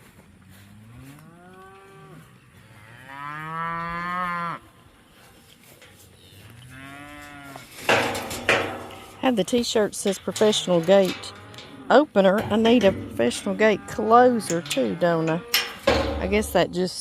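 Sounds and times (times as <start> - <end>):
cows mooing: 0.7 - 4.9, 6.3 - 9.2, 10.0 - 16.6.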